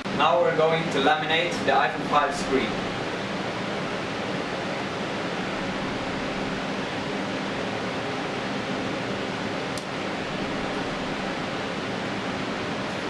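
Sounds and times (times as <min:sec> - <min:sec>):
steady machine hiss: 0:00.0 - 0:08.6.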